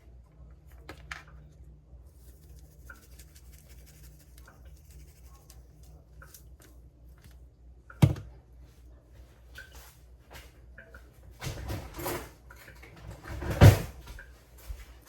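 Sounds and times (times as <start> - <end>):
steady low hum: 0.0 - 15.0
seasoning shaken into a bowl: 2.1 - 6.5.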